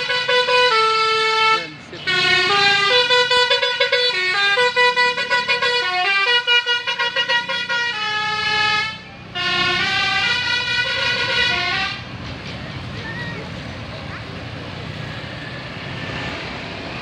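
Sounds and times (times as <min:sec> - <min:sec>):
bus musical horn tune: 0:00.0 - 0:12.1
traffic noise: 0:00.0 - 0:17.0.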